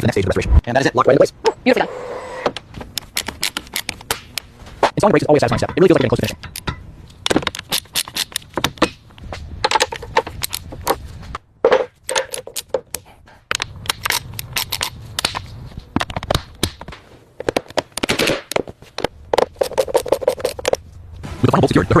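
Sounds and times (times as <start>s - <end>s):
metal tools clicking and clanking: 5.2s - 8.8s.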